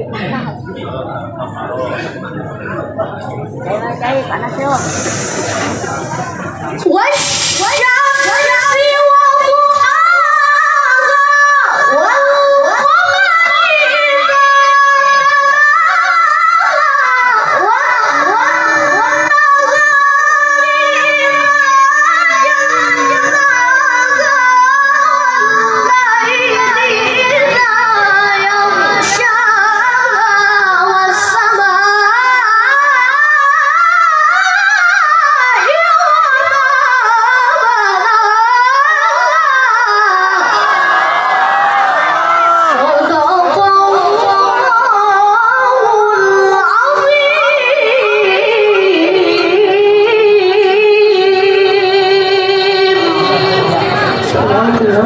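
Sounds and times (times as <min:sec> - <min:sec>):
high voice singing: 0:04.7 - 0:40.9.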